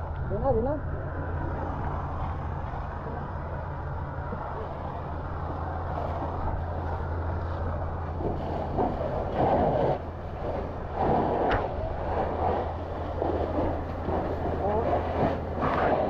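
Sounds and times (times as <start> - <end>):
low engine hum: 0.0 - 16.0.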